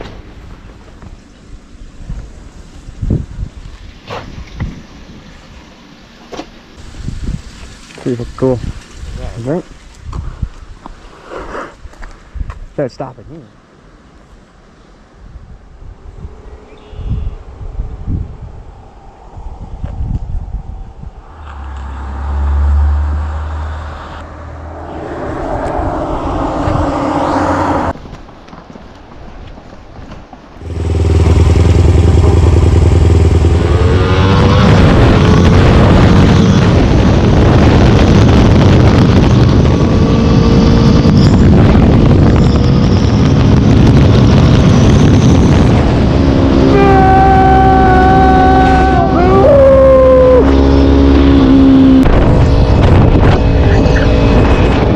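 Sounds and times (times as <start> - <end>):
motorcycle engine running: 30.6 - 37.1.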